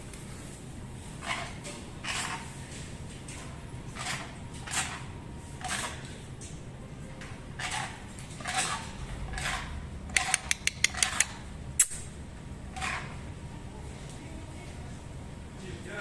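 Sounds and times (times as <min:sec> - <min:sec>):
animal grinding teeth: 0:07.6 - 0:12.0, 0:12.7 - 0:13.2
teeth clicking: 0:10.2 - 0:12.1.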